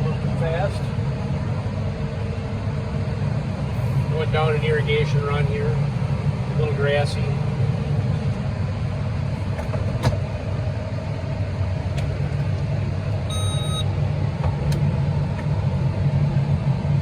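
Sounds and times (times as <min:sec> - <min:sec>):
heavy farm machinery rumble: 0:00.0 - 0:17.0
high electronic beep: 0:13.3 - 0:13.9.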